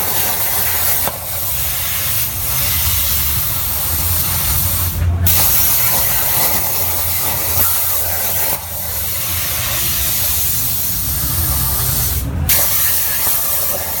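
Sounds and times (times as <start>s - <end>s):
plasma cutter hissing: 0.0s - 14.0s.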